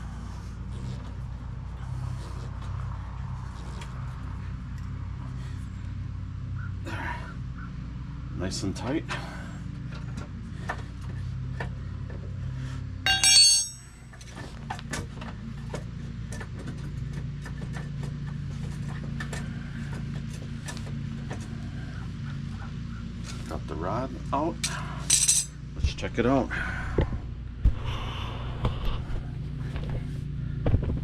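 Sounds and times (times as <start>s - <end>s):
steady low hum: 0.0s - 31.0s
bright metallic ringing tone: 13.1s - 14.0s.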